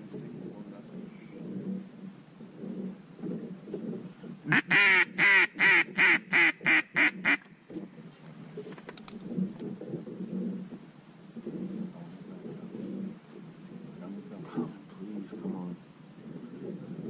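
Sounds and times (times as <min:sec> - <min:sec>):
duck call quacks: 0:04.5 - 0:07.4.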